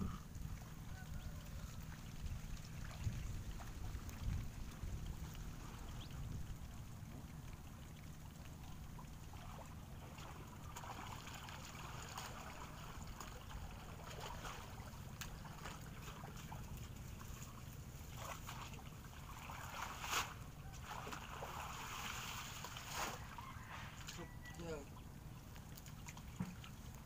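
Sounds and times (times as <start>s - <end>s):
steady low rumble: 0.0s - 11.0s
water splashing and sloshing: 0.0s - 27.0s.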